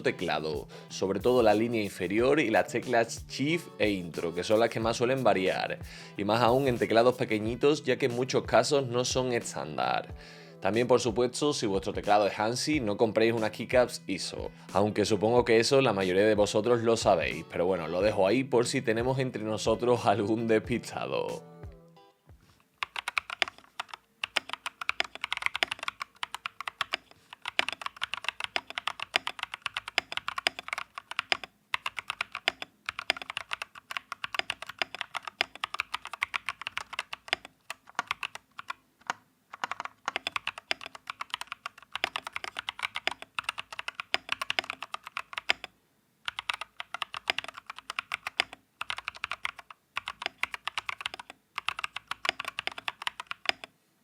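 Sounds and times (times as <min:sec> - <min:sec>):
keyboard keystroke clacks: 0:22.8 - 0:45.7, 0:46.3 - 0:53.7.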